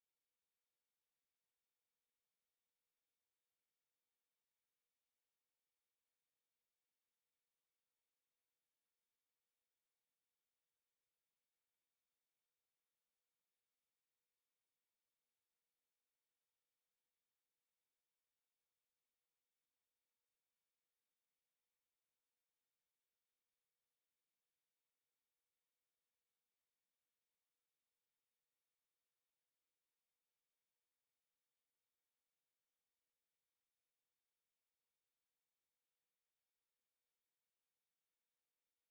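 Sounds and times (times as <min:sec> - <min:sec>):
high-pitched sine-wave test tone: 0:00.0 - 0:38.9.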